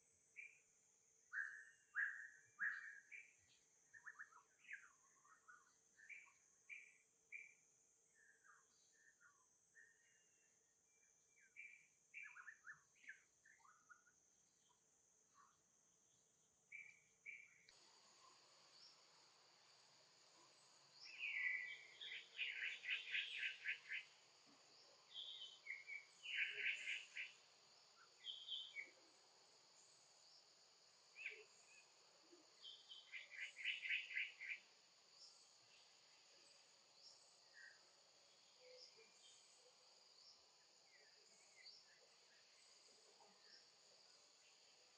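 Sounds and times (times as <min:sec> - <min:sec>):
birds chirping and trilling: 0:16.8 - 0:40.6
high insect drone: 0:17.8 - 0:44.9.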